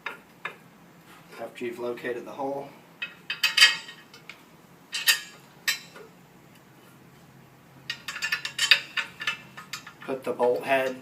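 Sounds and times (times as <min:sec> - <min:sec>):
metal hardware clinking and clanking: 0:03.0 - 0:06.1, 0:07.8 - 0:11.0.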